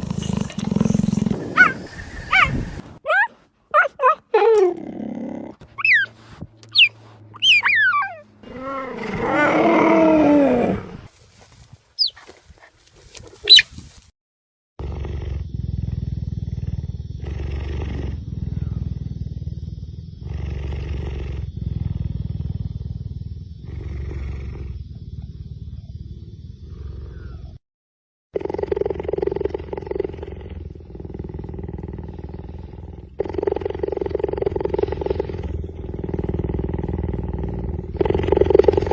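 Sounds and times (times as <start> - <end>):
cheetah purring: 0.0 - 10.8, 14.8 - 27.6, 28.4 - 38.9
cheetah chirping and yowling: 0.2 - 5.0, 5.6 - 9.9, 12.0 - 12.2, 13.4 - 13.7.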